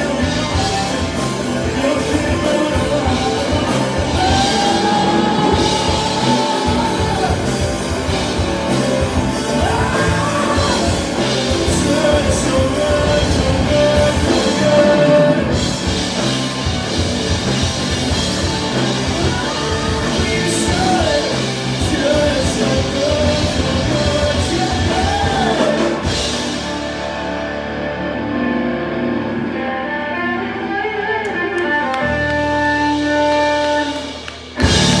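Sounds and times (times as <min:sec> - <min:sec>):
rock music with singing: 0:00.0 - 0:35.0.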